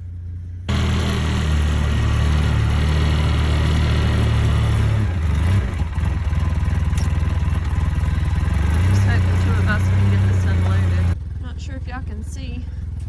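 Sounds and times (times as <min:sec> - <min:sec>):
vehicle engine running and idling: 0:00.0 - 0:13.0.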